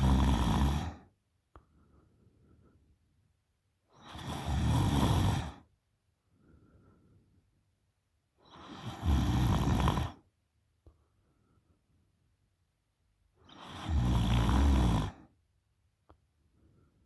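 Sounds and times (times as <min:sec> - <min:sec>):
woman snoring: 0:00.0 - 0:01.0, 0:04.0 - 0:05.6, 0:08.5 - 0:10.2, 0:13.5 - 0:15.2.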